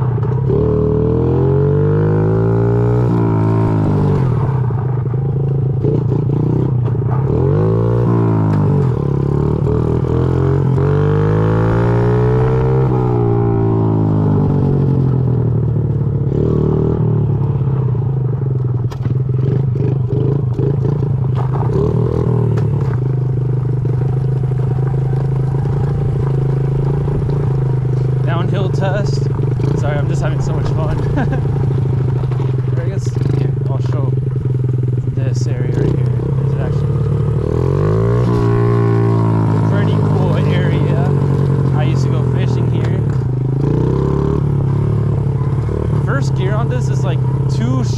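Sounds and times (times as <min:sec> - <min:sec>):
mini bike engine revving: 0:00.0 - 0:04.7, 0:05.8 - 0:17.2, 0:18.8 - 0:47.9.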